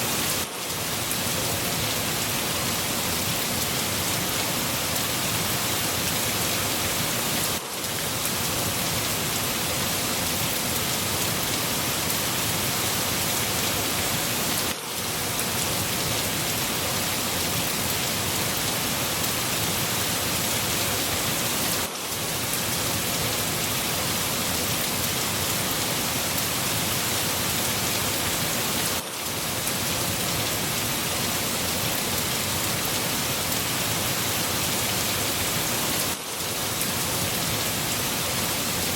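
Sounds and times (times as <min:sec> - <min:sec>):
steady rain on a surface: 0:00.0 - 0:38.9.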